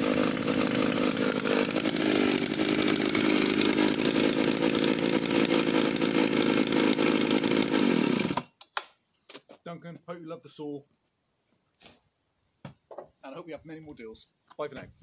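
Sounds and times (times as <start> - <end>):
chainsaw engine running: 0.0 - 8.5.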